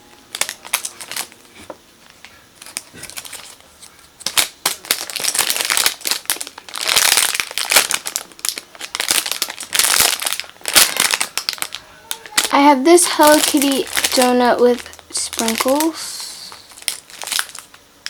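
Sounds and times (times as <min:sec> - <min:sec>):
squishy toy crinkling and rustling: 0:00.3 - 0:17.8.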